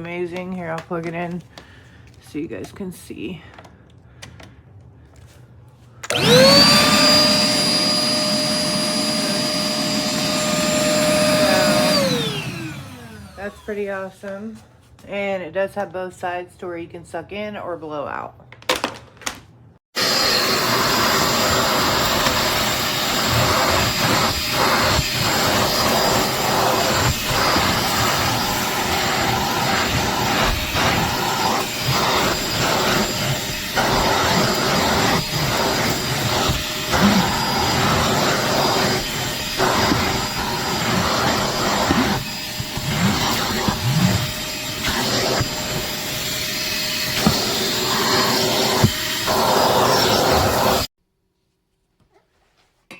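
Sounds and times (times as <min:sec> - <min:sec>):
shop vacuum running: 0:06.0 - 0:14.1, 0:20.0 - 0:50.9.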